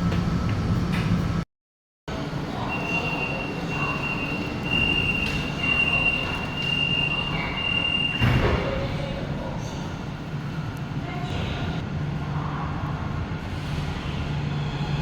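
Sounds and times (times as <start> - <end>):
train rumble on rails: 0.0 - 1.4, 2.1 - 15.0
train wheel squeal: 2.7 - 8.4.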